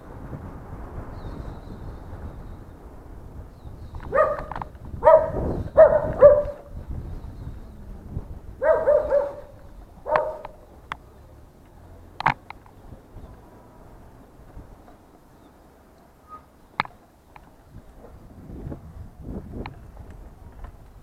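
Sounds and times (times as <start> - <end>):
dog barking: 4.1 - 6.7, 8.6 - 10.6
sharp clicks: 12.2 - 12.8.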